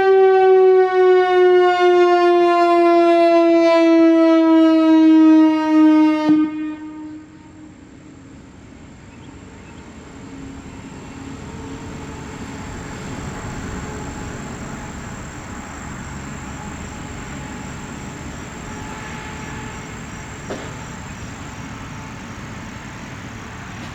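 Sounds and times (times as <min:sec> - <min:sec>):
high-pitched electronic siren: 0:00.0 - 0:06.7.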